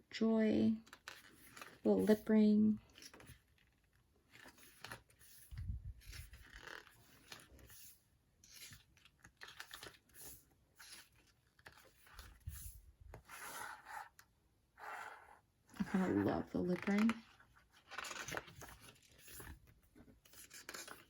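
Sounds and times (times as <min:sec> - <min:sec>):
rustling of paper and plastic: 0:15.8 - 0:21.0.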